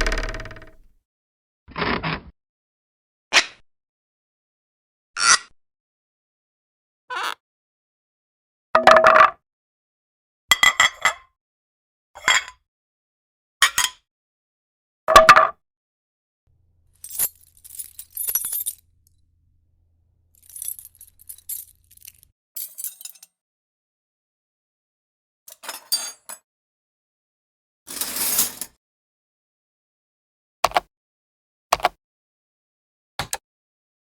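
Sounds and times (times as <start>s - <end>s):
hard objects clinking: 17.0s - 19.2s, 20.4s - 22.3s
high-pitched clinks and rattles: 17.0s - 19.2s, 20.4s - 23.1s.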